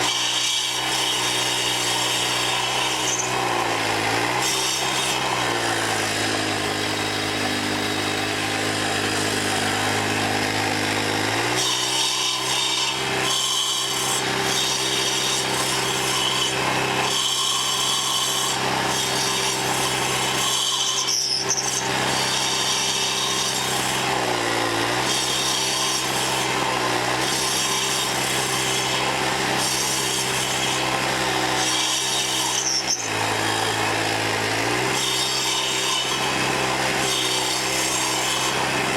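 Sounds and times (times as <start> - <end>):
saw blades grinding wood: 0.0 - 38.9.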